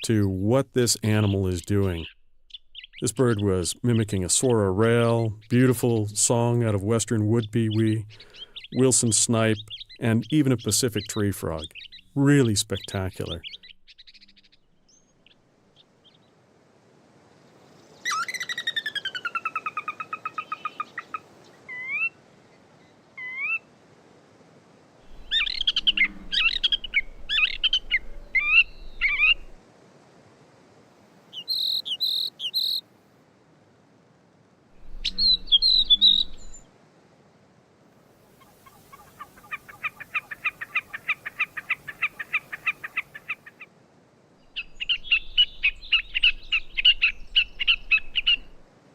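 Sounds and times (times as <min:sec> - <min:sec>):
catbird singing varied phrases: 0:25.1 - 0:29.6, 0:31.3 - 0:32.8, 0:34.8 - 0:36.6.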